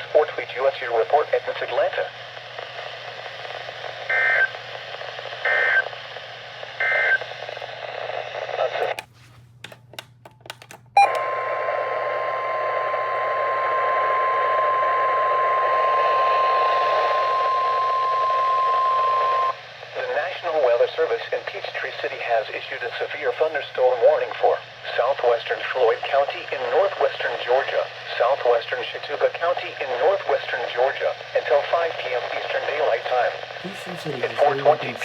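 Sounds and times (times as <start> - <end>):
hissing static: 33.5 - 35.0.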